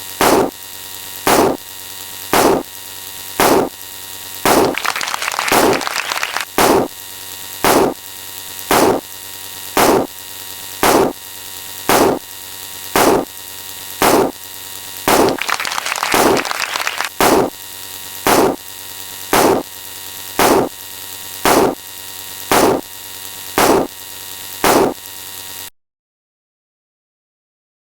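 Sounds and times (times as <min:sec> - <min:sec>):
electrical hum: 0:00.0 - 0:00.6, 0:01.3 - 0:01.7, 0:02.3 - 0:02.8, 0:03.4 - 0:03.8, 0:04.5 - 0:07.0, 0:07.6 - 0:08.0, 0:08.7 - 0:09.1, 0:09.7 - 0:25.2
short sharp sound effect: 0:22.5 - 0:22.8, 0:24.6 - 0:25.0.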